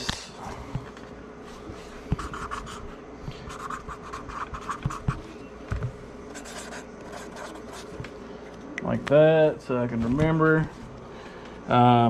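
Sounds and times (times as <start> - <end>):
scratchy handwriting strokes: 1.9 - 5.4, 6.3 - 8.0.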